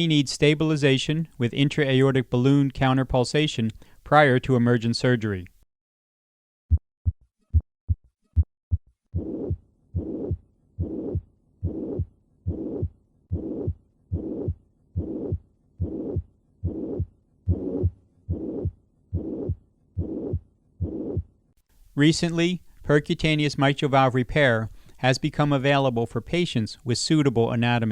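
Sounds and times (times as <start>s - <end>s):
heart murmur: 6.7s - 21.4s
heartbeat through stethoscope: 6.7s - 21.4s.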